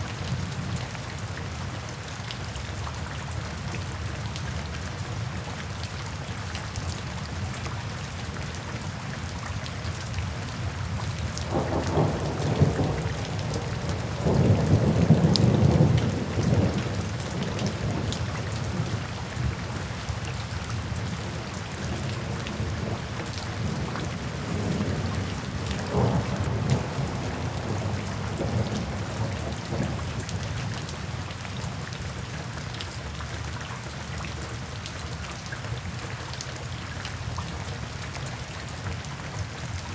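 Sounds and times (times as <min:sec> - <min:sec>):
rain on a tin roof: 0:00.0 - 0:39.9
thunder rumbling: 0:11.4 - 0:19.5, 0:21.8 - 0:30.5.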